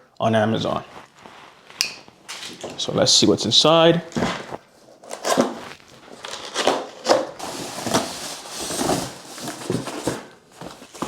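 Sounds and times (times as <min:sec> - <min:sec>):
cardboard box being rummaged through: 0:05.1 - 0:11.0.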